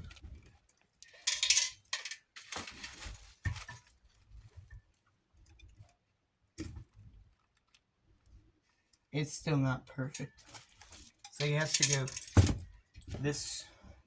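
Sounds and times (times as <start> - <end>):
metallic clinking and rattling: 1.0 - 3.9, 10.1 - 12.8.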